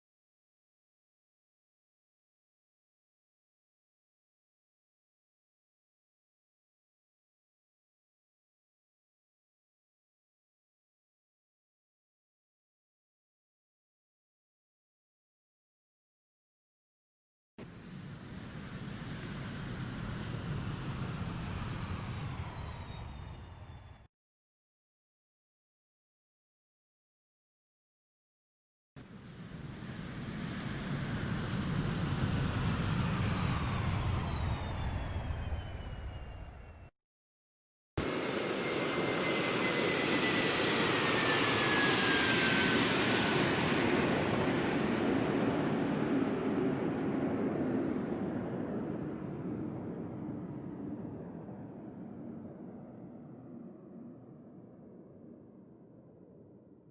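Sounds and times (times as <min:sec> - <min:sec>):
jet airplane passing: 0:17.8 - 0:24.1, 0:29.2 - 0:36.9, 0:38.0 - 0:54.7.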